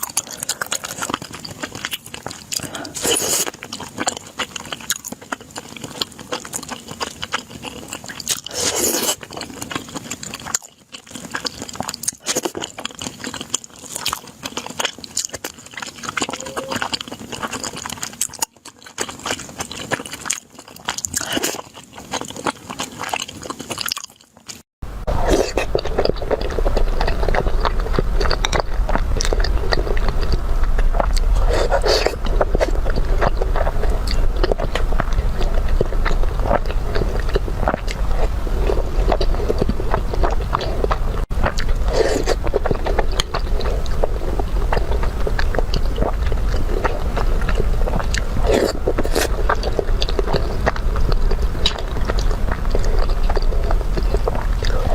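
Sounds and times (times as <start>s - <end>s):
crunchy food chewing: 0.0s - 54.9s
low hum: 24.8s - 54.9s.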